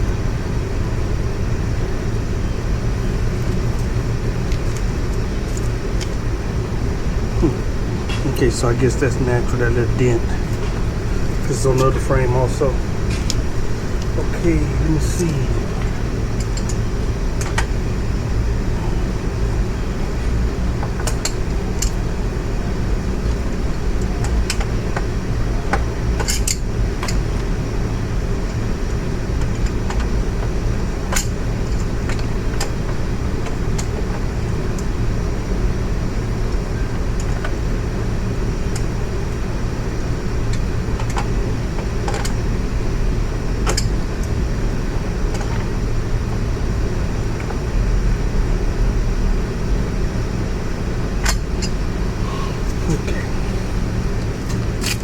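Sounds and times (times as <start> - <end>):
low mechanical hum: 0.0 - 55.0
tools and parts clicking: 26.2 - 27.2.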